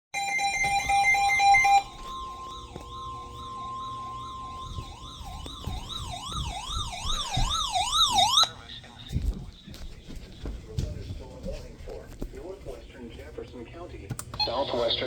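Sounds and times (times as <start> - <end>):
faint steady high tone: 0.2 - 7.2
loud steady buzzing tone: 0.2 - 8.5
siren-like wail sweeping: 0.2 - 8.6.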